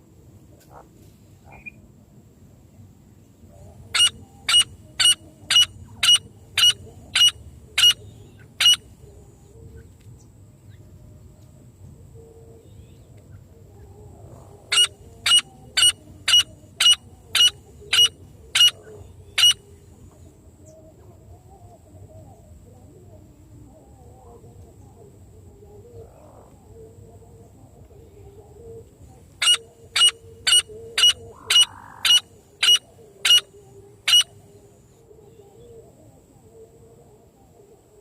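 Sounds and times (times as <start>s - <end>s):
francolin calling: 3.6s - 9.2s, 14.3s - 19.9s, 29.1s - 35.7s.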